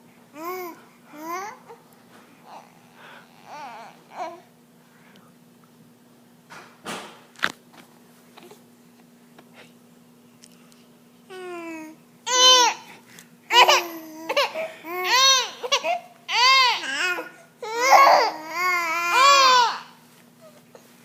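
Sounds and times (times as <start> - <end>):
baby cooing and squealing: 3.4 - 4.5, 11.3 - 12.9, 13.5 - 20.0.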